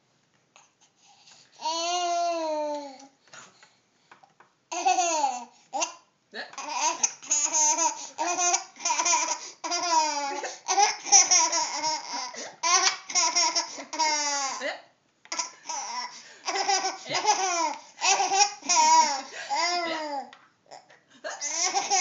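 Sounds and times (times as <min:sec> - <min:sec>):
baby laughing: 0:04.7 - 0:06.0, 0:06.6 - 0:14.6, 0:15.3 - 0:20.3, 0:21.3 - 0:22.0.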